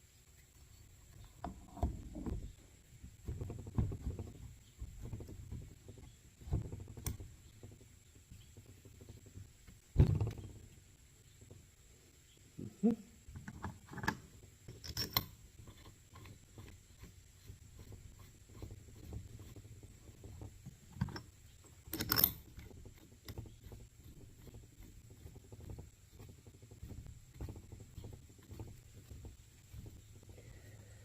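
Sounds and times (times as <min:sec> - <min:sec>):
knocks and clicks of small parts: 0:13.3 - 0:17.1, 0:20.2 - 0:23.8.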